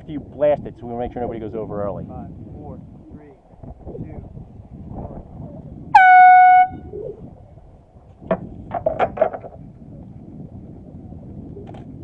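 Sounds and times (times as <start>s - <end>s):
air horn blast: 5.9s - 6.9s.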